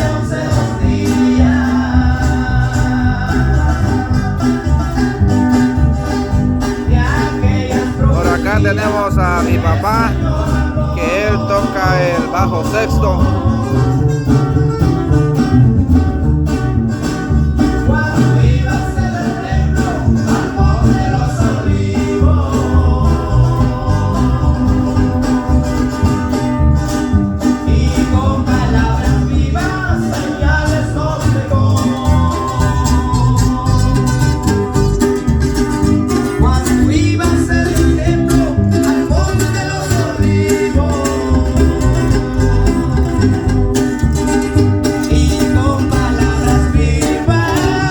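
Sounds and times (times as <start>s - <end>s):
heavy bass guitar: 0.0s - 47.9s
live band playing: 0.0s - 47.9s
plucked guitar: 0.0s - 47.9s
steady drum beat: 6.4s - 13.6s.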